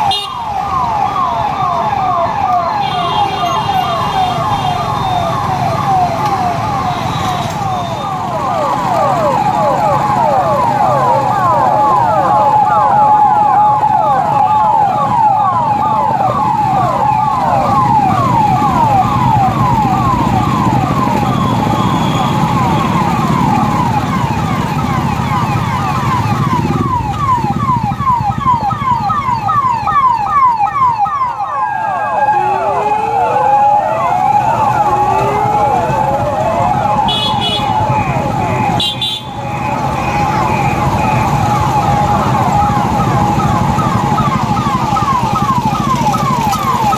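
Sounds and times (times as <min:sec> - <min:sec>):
police sirens sweeping: 0:00.0 - 0:46.9
steady held siren tone: 0:00.0 - 0:46.9
vehicle engines running: 0:00.0 - 0:46.9.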